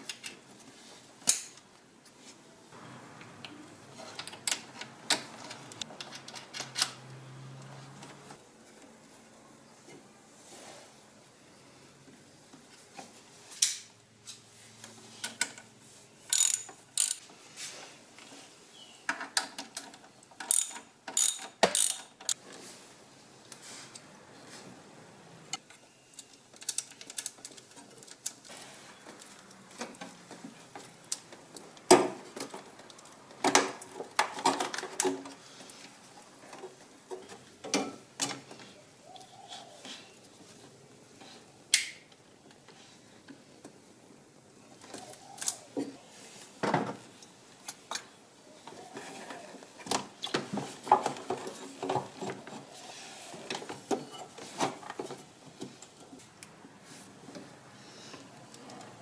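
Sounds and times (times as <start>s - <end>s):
ratchet wrench clicking: 16.3s - 17.2s, 20.5s - 22.4s
tools clinking on metal: 16.3s - 17.2s, 20.5s - 22.4s.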